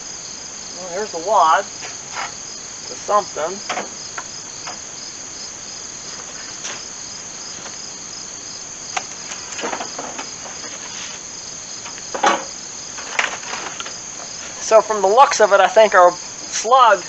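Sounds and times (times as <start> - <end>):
insect chorus trilling: 0.0 - 17.0
handling knocks and rustles: 9.0 - 14.6.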